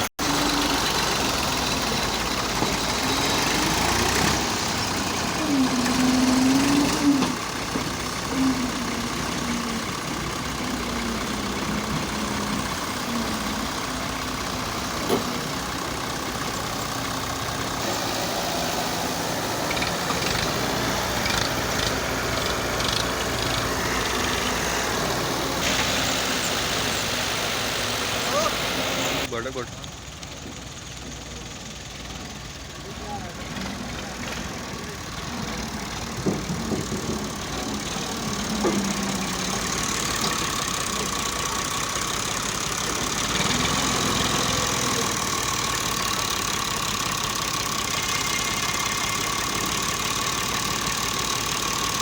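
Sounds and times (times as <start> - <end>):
heavy machinery engine running: 0.0 - 52.0.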